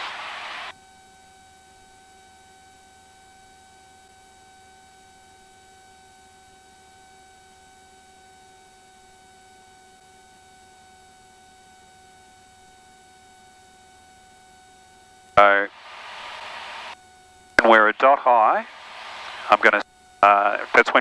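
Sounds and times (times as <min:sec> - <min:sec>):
even hiss: 0:00.0 - 0:00.7, 0:15.4 - 0:17.0, 0:17.6 - 0:21.0
faint electrical hum: 0:15.4 - 0:21.0.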